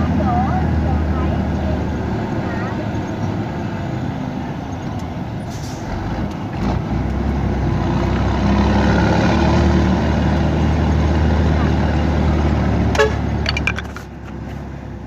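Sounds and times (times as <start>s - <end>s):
diesel truck engine running: 0.0s - 15.0s.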